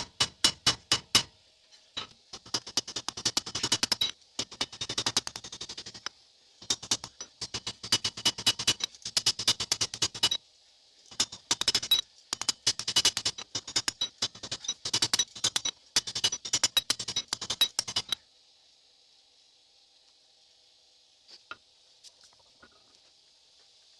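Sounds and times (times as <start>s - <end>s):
hammer striking steel on anvil: 0.0s - 1.3s, 6.0s - 10.4s, 11.1s - 18.2s.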